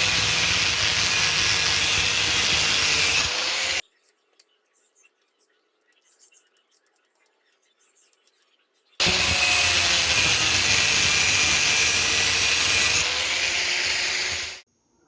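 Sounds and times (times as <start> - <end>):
power tool cutting metal: 0.0 - 3.8, 9.0 - 14.6.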